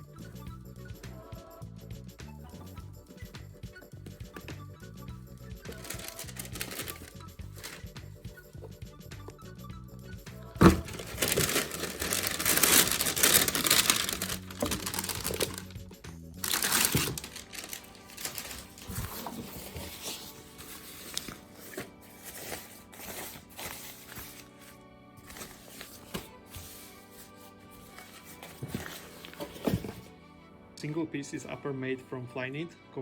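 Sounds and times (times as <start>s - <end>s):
background music: 0.0s - 33.0s
soft handling sounds: 5.6s - 8.7s, 10.6s - 15.8s, 16.4s - 30.1s
paper packing crinkling: 5.7s - 8.0s, 10.6s - 15.8s, 16.4s - 30.1s.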